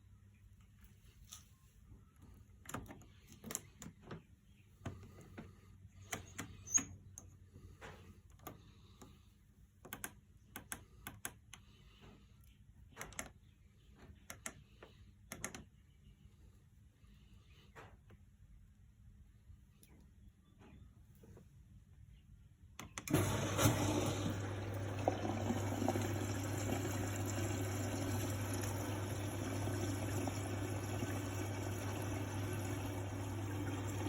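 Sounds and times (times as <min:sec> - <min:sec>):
washing machine low hum: 0:10.8 - 0:34.0.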